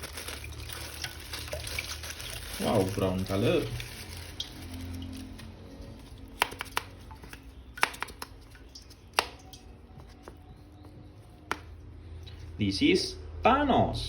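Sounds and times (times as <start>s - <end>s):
plastic toy clicks and taps: 6.4s - 6.9s, 7.8s - 8.4s.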